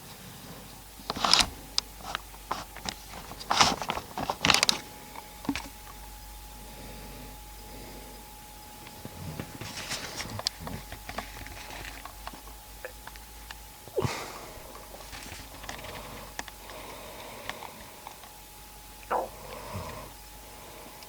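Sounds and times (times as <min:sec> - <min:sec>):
small clicks and rustles: 0:01.0 - 0:06.0, 0:08.8 - 0:13.6, 0:14.7 - 0:16.8
person sniffing: 0:13.9 - 0:16.3.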